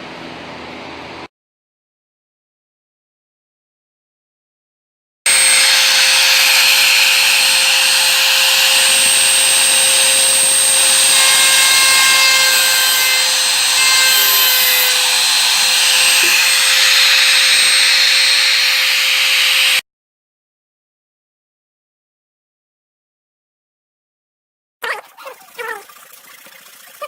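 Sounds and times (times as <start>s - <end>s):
bit grinding into wood: 5.3s - 19.8s
drill press motor hum: 5.3s - 19.8s.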